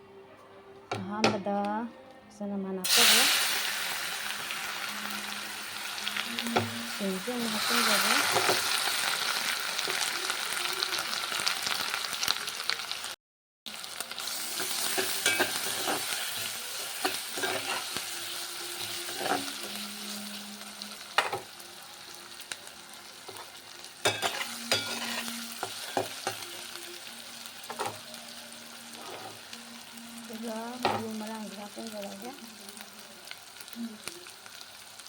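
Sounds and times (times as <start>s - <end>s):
ginger sizzling in hot oil: 2.8s - 35.0s
spoon scraping pan: 14.9s - 16.2s, 17.0s - 18.0s, 19.0s - 19.7s, 24.0s - 26.4s, 29.0s - 29.4s.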